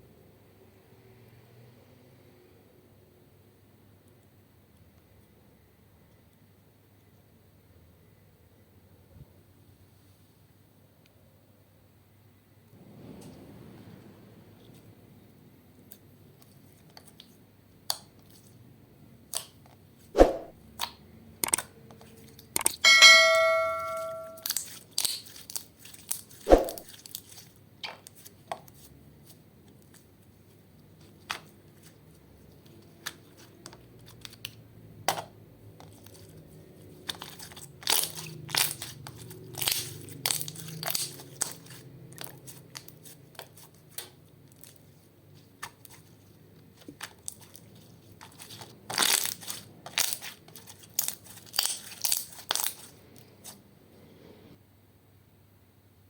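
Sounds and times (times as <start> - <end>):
short bell-like ring: 22.8 - 24.4.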